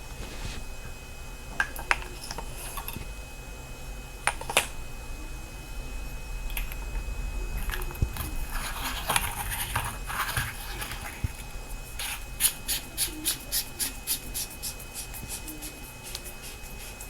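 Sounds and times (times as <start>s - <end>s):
light scratching strokes: 8.2s - 17.0s.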